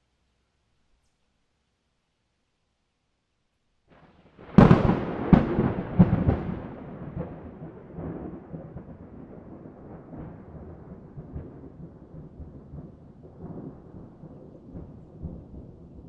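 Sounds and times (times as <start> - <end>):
rolling thunder rumble: 4.4 - 16.0
thunder cracks: 4.4 - 16.0.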